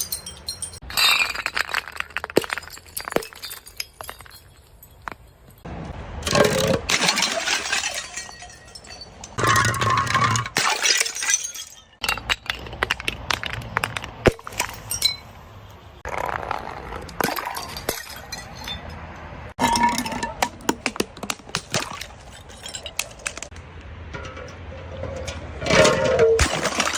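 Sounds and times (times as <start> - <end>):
glass bottles crushing: 0.0 - 5.6, 6.3 - 15.3, 16.1 - 19.0, 19.6 - 23.6, 25.0 - 26.9
glass shards clinking: 0.0 - 5.6, 6.5 - 13.4, 14.2 - 15.3, 17.2 - 19.0, 19.6 - 20.5, 21.8 - 23.5.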